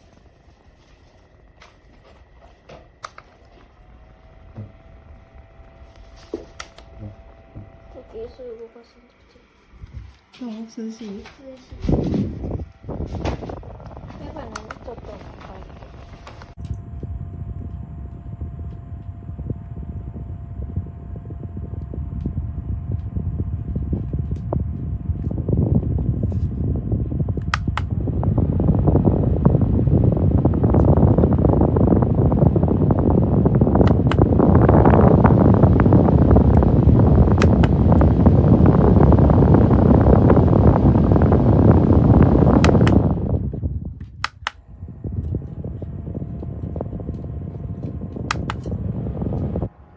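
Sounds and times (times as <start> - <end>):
faint motor tone: 0.0 - 43.8, 44.6 - 49.9
fan airflow buffeting microphone: 0.0 - 49.9
sharp clicks: 3.0 - 3.9, 6.5 - 7.1, 13.8 - 16.8, 27.4 - 27.9, 33.8 - 34.3, 44.1 - 44.6, 48.2 - 48.8.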